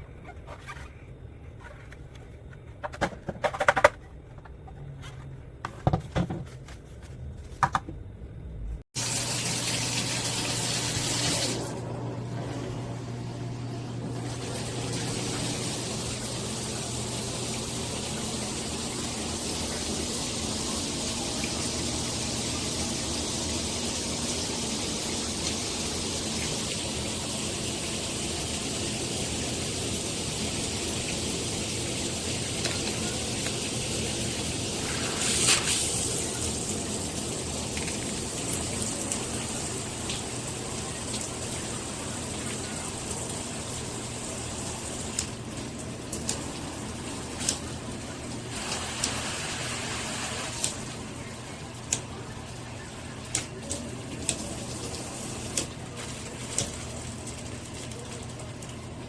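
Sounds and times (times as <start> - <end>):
shower head spraying water: 9.0 - 11.8, 14.1 - 45.4, 48.5 - 51.0.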